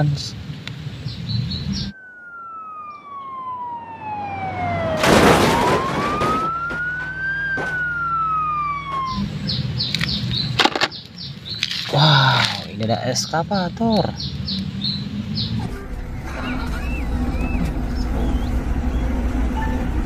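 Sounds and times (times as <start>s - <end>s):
ambulance siren wailing: 1.9s - 10.1s, 15.5s - 20.0s.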